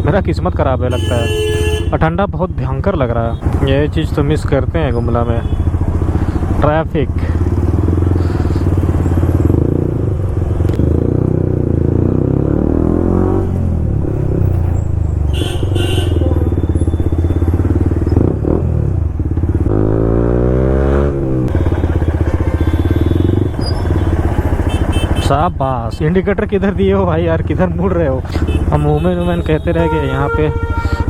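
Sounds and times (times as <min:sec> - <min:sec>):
motorcycle engine revving: 0:03.3 - 0:25.6.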